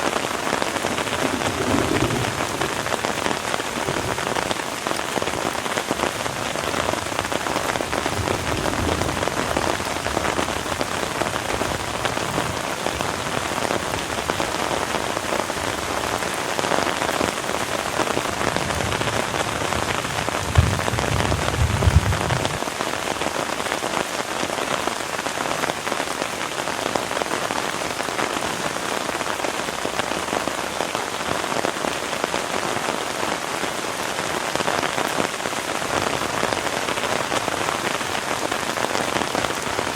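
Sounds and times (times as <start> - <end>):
heavy rain falling: 0.0 - 39.9
low rumble: 0.8 - 4.4, 19.8 - 22.6.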